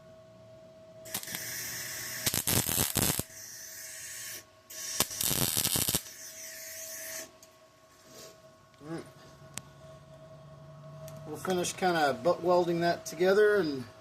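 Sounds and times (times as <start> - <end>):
welding arc crackling and hissing: 1.1 - 7.3.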